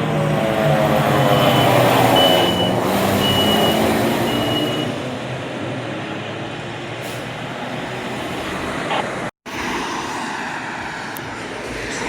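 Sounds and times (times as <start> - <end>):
truck reversing beeper: 1.1 - 5.0.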